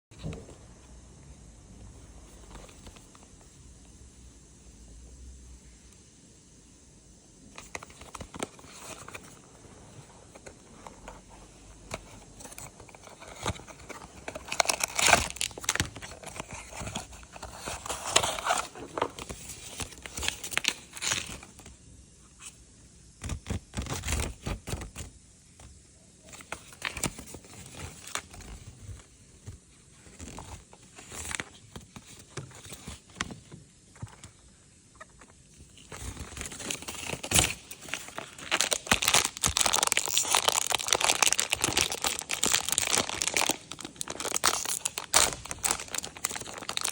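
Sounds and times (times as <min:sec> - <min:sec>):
packaging tearing and crinkling: 0:12.3 - 0:21.6, 0:35.8 - 0:46.9.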